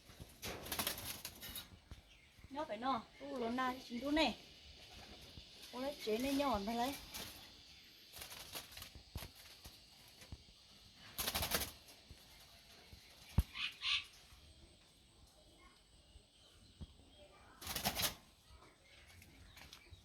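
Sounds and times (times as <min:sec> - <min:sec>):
rustles and scrapes of building materials: 0:00.0 - 0:02.5, 0:04.6 - 0:13.5.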